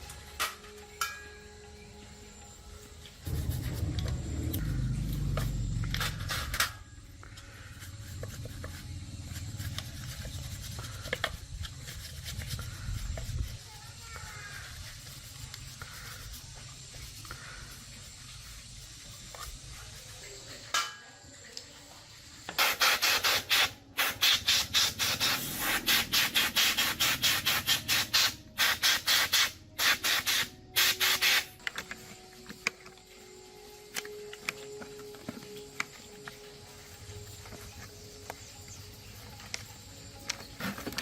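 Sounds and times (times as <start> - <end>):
abrasive rubbing strokes: 22.6 - 31.6.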